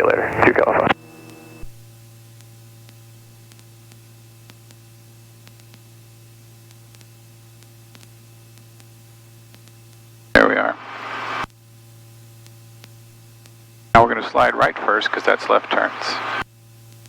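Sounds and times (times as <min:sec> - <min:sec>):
intercom hiss: 0:00.0 - 0:01.7, 0:10.4 - 0:11.5, 0:14.0 - 0:16.4
low electrical hum: 0:00.0 - 0:17.0.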